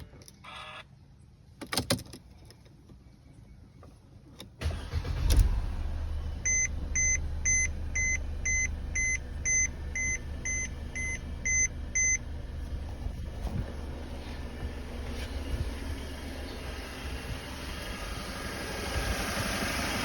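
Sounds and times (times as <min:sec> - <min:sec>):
car engine starting and idling: 0:04.4 - 0:20.0
electronic warning chime beeping: 0:06.4 - 0:12.2.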